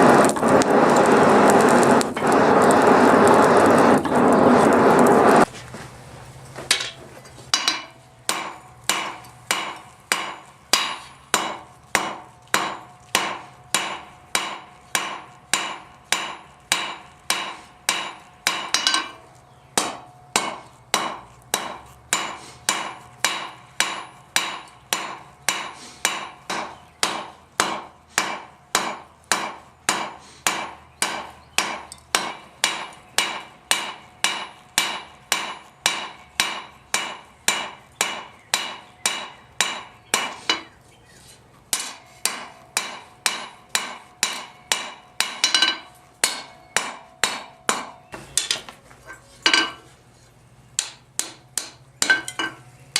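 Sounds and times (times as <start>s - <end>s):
loud rush of noise: 0.0s - 5.5s
hammer striking steel on anvil: 6.7s - 40.8s, 41.7s - 49.9s, 50.8s - 52.7s.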